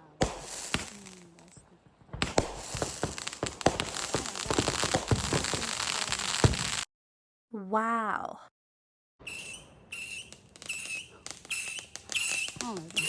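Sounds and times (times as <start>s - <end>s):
firework bang: 0.0s - 1.5s, 2.2s - 6.9s
fireworks crackling: 0.0s - 6.9s, 9.3s - 13.0s.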